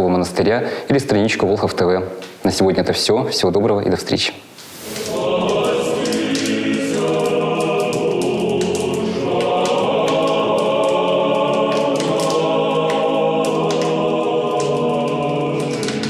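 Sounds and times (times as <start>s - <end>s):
choir singing sustained chords: 4.8s - 16.0s.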